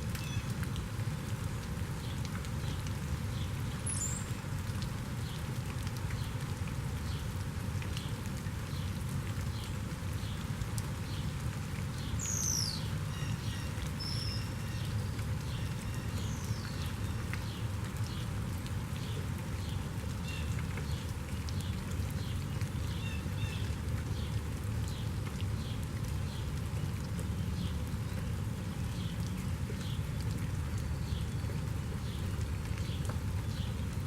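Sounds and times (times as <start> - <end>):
steady rain falling: 0.0 - 34.0
birds singing: 12.3 - 17.0.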